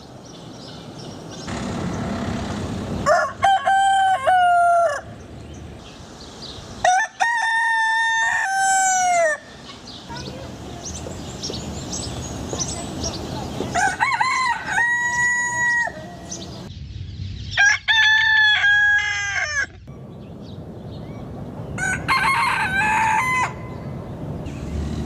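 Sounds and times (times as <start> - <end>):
rooster crowing: 3.0 - 5.2, 6.8 - 9.5, 13.8 - 16.4, 17.6 - 19.7, 21.8 - 23.8.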